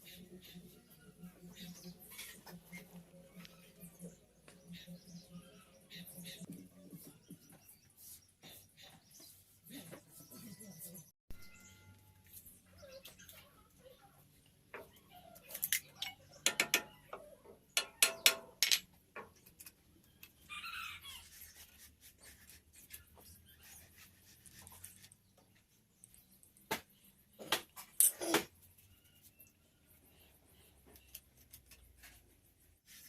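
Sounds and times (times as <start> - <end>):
sharp taps and knocks: 16.4 - 17.2.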